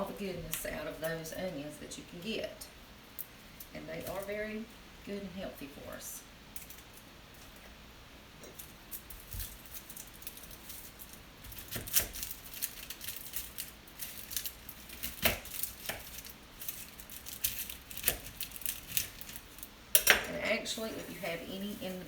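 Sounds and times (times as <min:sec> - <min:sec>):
onion peelings crinkling: 0:08.4 - 0:22.0.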